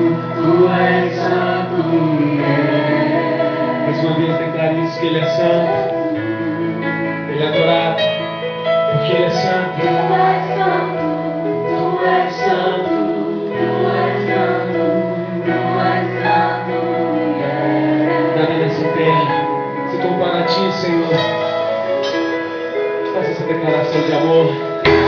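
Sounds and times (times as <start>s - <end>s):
band playing slow song: 0.0s - 25.0s
woman singing: 9.8s - 18.4s.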